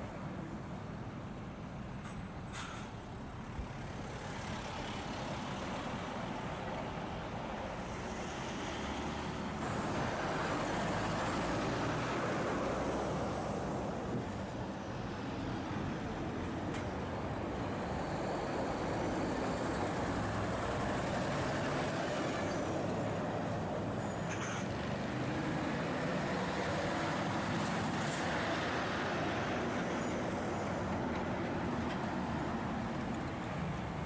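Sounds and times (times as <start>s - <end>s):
lorry diesel engines running: 0.0s - 34.0s
road traffic noise: 0.0s - 34.0s
brief hiss: 2.5s - 2.9s.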